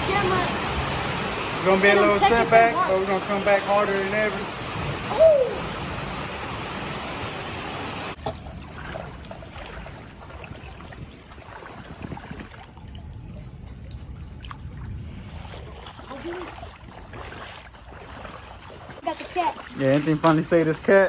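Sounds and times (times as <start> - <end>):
loud steady rushing noise: 0.0 - 8.2
water trickling and sloshing: 0.0 - 21.0
small splashes: 8.1 - 21.0.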